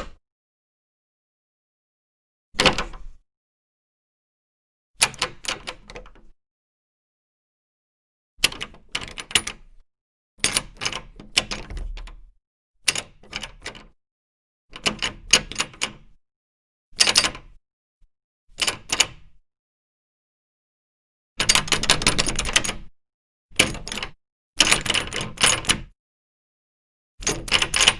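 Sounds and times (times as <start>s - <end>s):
door knob latch clicking and rattling: 5.0s - 6.3s, 8.4s - 9.7s, 10.4s - 12.3s, 12.9s - 14.0s, 14.8s - 16.2s, 17.0s - 17.5s, 18.6s - 19.2s, 21.4s - 22.9s, 23.6s - 25.9s, 27.2s - 27.9s.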